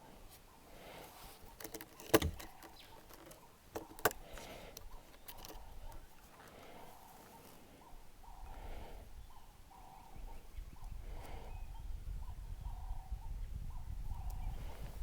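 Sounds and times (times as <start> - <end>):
faint handling rustle: 0.0 - 7.8.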